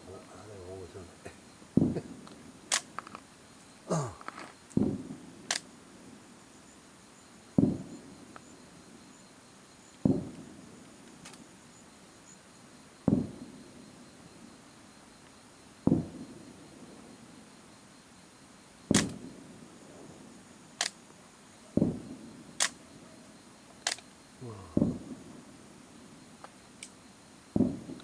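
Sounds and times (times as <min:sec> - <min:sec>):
fireworks booming: 0:01.2 - 0:02.2, 0:03.9 - 0:05.2, 0:07.6 - 0:08.0, 0:10.0 - 0:10.4, 0:13.1 - 0:13.4, 0:15.9 - 0:16.2, 0:21.8 - 0:22.2, 0:24.4 - 0:25.4, 0:27.6 - 0:28.0
sharp firework cracks: 0:01.8 - 0:02.1, 0:18.9 - 0:19.2, 0:24.8 - 0:25.2.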